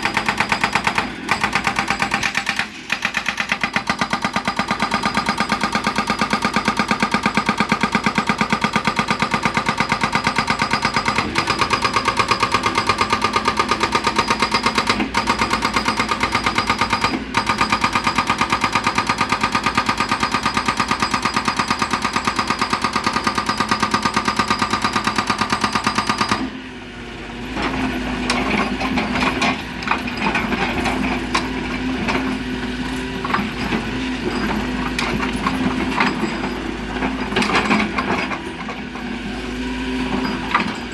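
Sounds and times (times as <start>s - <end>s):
hydraulic breaker hammering stone: 0.0s - 26.6s, 27.6s - 39.2s, 40.0s - 40.9s
machine clanks and knocks: 33.2s - 39.0s.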